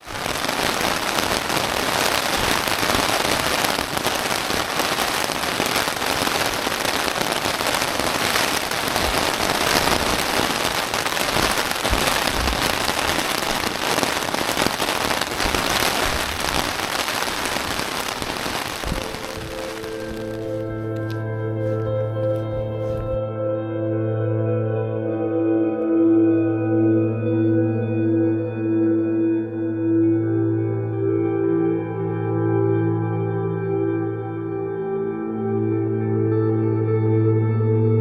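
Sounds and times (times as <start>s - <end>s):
heavy rain falling: 0.0s - 23.1s.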